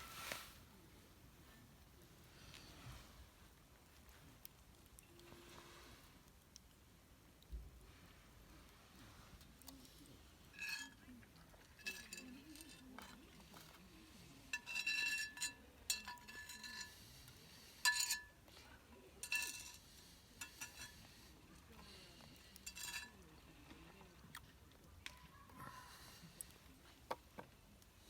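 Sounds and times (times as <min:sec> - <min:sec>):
utensils clinking on cookware: 0:10.5 - 0:11.1, 0:11.7 - 0:13.3, 0:14.5 - 0:17.0, 0:17.8 - 0:18.4, 0:19.2 - 0:19.8, 0:20.4 - 0:21.1, 0:22.5 - 0:23.2.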